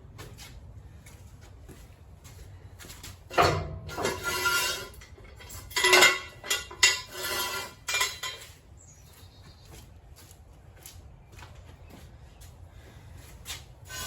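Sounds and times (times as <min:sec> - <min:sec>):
metal tools clanking and scraping: 0:03.3 - 0:08.7.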